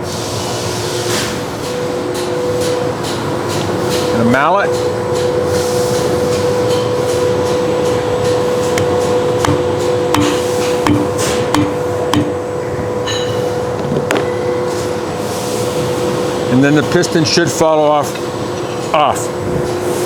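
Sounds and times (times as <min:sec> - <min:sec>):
steady hum: 0:01.4 - 0:20.0
mallet knocking on plastic tool: 0:09.4 - 0:12.4.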